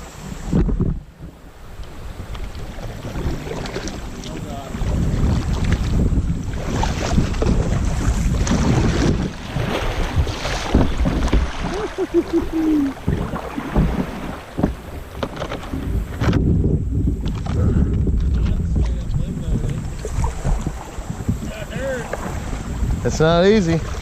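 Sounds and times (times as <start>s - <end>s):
wind buffeting microphone: 0.0s - 24.0s
creek water rushing: 1.4s - 15.3s.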